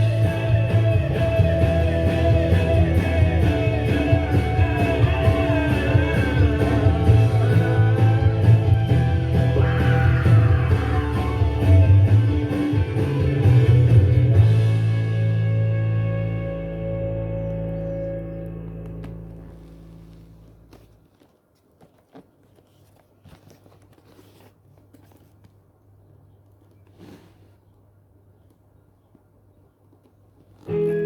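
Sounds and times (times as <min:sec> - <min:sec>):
rock song with singing and guitar: 0:00.0 - 0:17.7.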